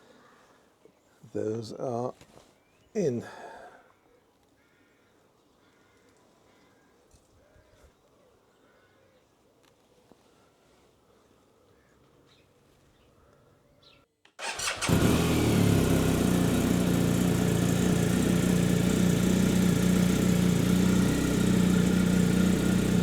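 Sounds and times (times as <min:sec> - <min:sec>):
motorcycle engine starting and idling: 0:14.4 - 0:23.0.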